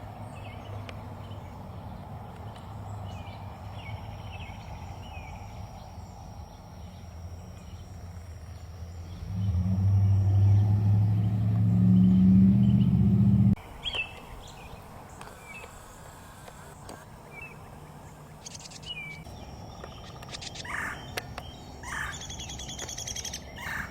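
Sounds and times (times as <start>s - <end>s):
low engine drone: 0.1s - 23.8s
faint bird chirps: 13.8s - 23.9s.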